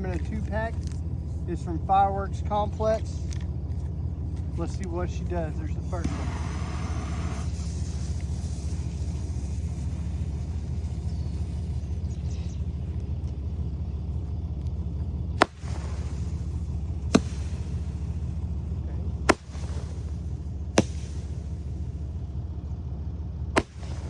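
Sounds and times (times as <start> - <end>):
steady low rumble: 0.0 - 24.0
roman candle firing pops: 15.4 - 16.2, 17.1 - 17.8, 20.8 - 21.4, 23.6 - 24.0.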